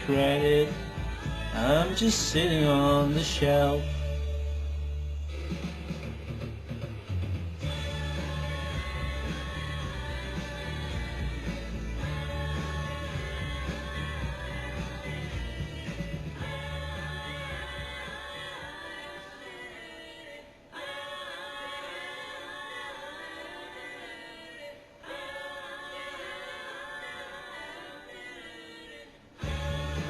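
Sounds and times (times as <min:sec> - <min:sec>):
bass and beat: 0:00.0 - 0:18.4, 0:29.4 - 0:30.0
wordless vocal harmonies: 0:00.0 - 0:30.0.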